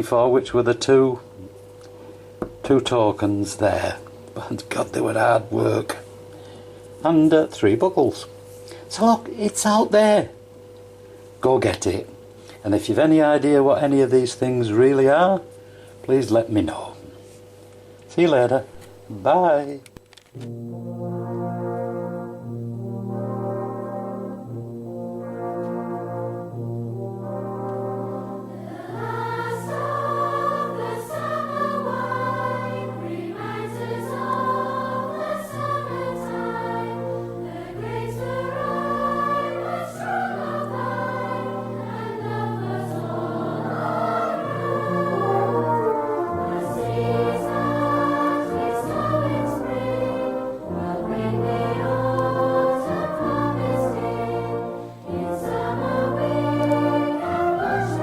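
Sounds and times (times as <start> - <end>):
choir singing sustained chords: 0.0 - 11.5, 20.4 - 58.0
orchestral brass and bass: 20.4 - 58.0.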